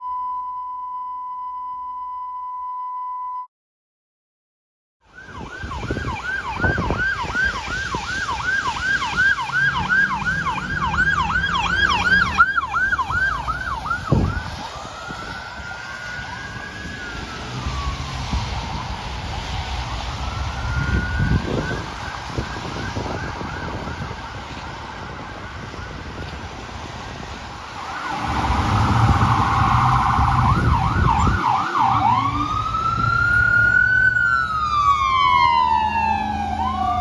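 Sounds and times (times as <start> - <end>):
steady electronic beep tone: 0.0 - 3.5
emergency vehicle siren: 5.0 - 37.0
traffic rumble: 5.1 - 37.0.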